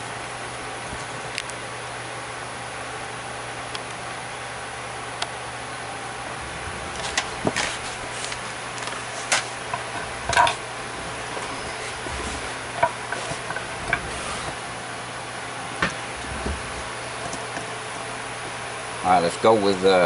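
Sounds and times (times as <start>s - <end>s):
steady hiss: 5.8s - 20.0s.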